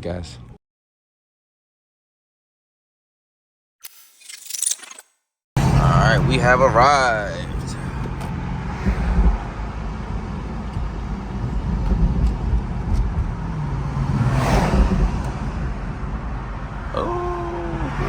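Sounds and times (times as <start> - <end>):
car engine hum: 5.6 - 18.0
road noise: 5.6 - 18.0.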